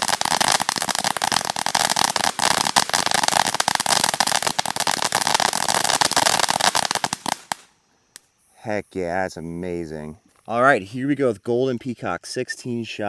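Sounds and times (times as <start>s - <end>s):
firework fountain crackling: 0.0s - 8.2s
firework hiss: 0.0s - 8.3s.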